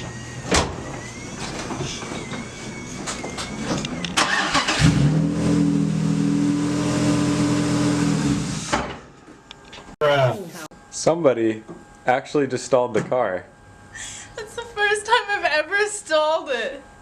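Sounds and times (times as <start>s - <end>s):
car starter cranking: 4.0s - 5.2s.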